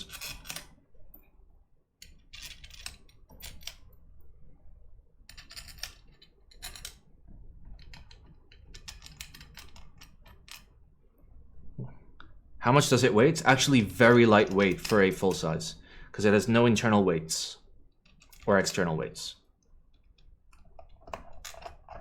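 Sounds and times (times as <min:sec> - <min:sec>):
small metal screws clicking: 0:00.0 - 0:00.8, 0:05.3 - 0:07.0, 0:07.8 - 0:10.7.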